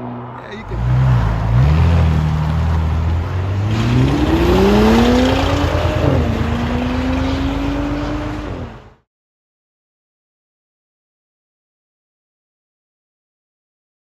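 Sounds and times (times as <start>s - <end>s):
car exhaust engine accelerating: 0.0s - 9.0s.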